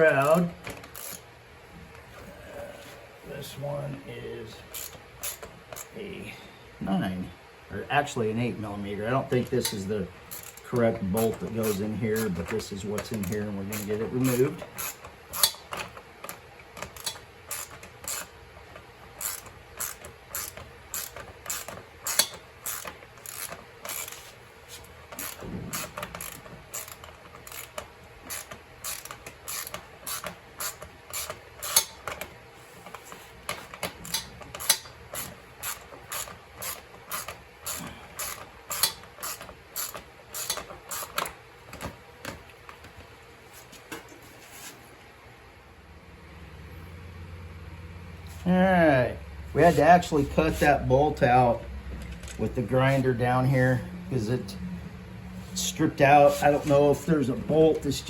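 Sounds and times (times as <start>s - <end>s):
ratchet wrench clicking: 0.1s - 1.2s, 4.7s - 5.9s, 9.6s - 15.9s, 16.8s - 18.4s, 19.1s - 32.2s, 33.8s - 41.9s.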